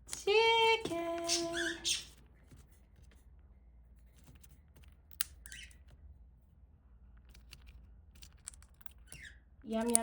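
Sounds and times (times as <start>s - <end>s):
bird squawk: 1.2s - 2.2s.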